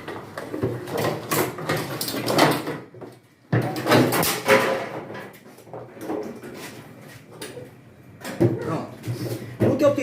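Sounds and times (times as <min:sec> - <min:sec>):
scraping and knocking of panels: 0:00.0 - 0:07.6.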